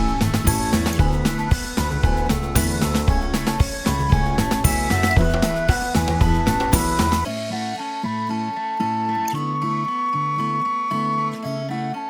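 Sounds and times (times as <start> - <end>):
drums: 0.0 - 9.2
melody over plucked guitar: 0.0 - 12.0.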